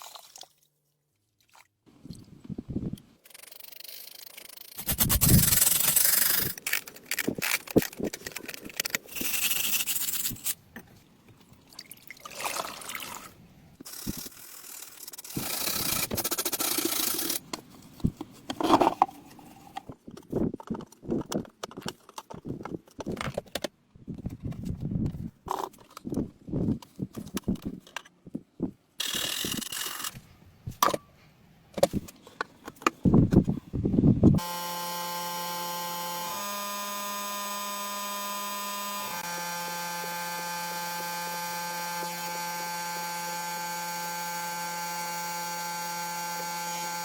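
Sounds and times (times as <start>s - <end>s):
scrubbing and scraping on metal: 3.2s - 10.6s.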